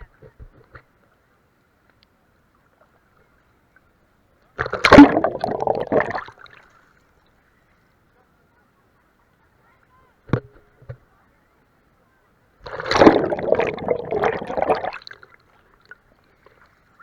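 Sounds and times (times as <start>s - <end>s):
seawater splashing: 4.6s - 6.6s, 12.6s - 17.0s.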